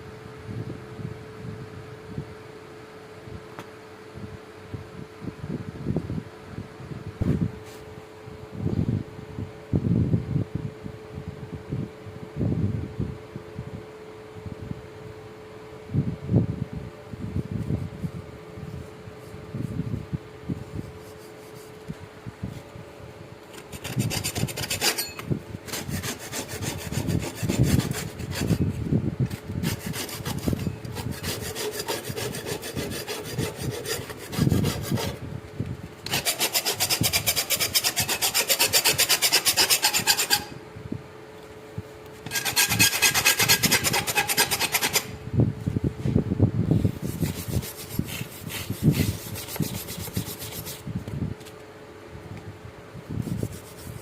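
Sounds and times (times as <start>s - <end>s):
knife blade being scraped: 23.5s - 28.7s, 29.6s - 35.2s, 36.1s - 40.6s, 42.3s - 45.1s.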